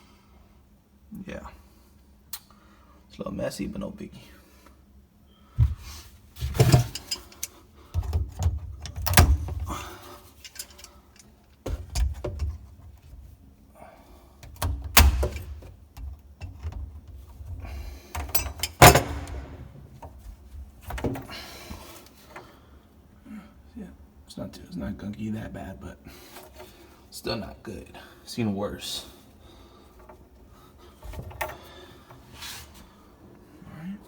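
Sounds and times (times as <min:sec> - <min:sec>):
plumbing parts clunking and rattling: 0:05.6 - 0:13.4, 0:14.4 - 0:22.6, 0:29.5 - 0:32.3.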